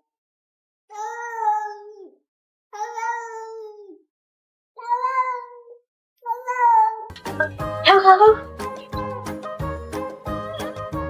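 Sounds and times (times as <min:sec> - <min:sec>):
cat meowing: 0:00.9 - 0:02.1, 0:02.8 - 0:04.0, 0:04.8 - 0:07.1.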